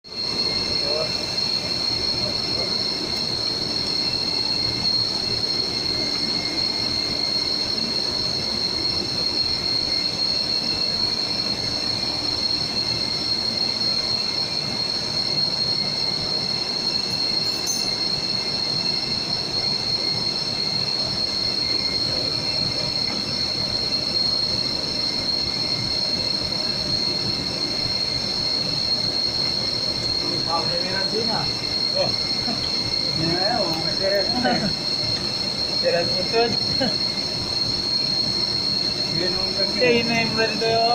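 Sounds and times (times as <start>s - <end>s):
high-pitched machine whine: 0.0s - 40.9s
mechanical noise: 0.1s - 40.9s.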